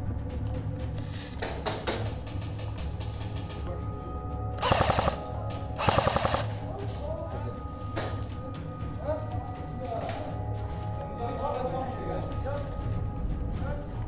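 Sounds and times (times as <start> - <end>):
background music: 0.0 - 14.0
airsoft gun full-auto fire: 4.6 - 5.2, 5.8 - 6.5.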